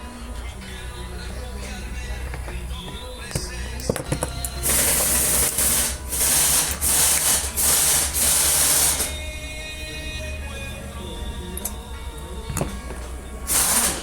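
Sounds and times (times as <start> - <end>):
compressed air blasts hissing: 4.6 - 9.1, 13.5 - 14.0.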